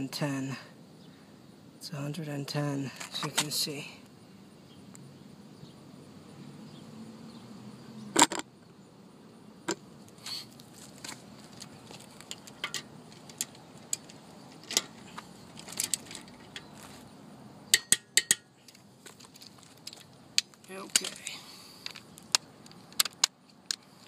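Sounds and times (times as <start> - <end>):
metal tools clinking and clanking: 12.3 - 16.7.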